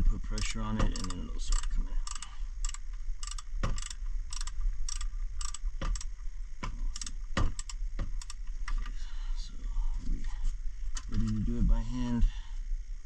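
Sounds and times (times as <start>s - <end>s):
steady low hum: 0.0s - 13.0s
muffled ratchet wrench clicking: 0.3s - 6.2s, 6.9s - 8.5s.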